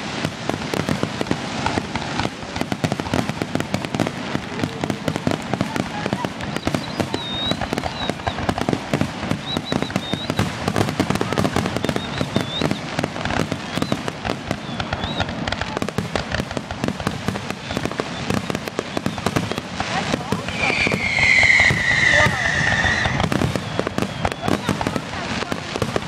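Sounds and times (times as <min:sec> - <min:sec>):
firework whistling: 0:00.0 - 0:16.5, 0:17.2 - 0:26.0
fireworks bangs and crackles: 0:00.0 - 0:26.0.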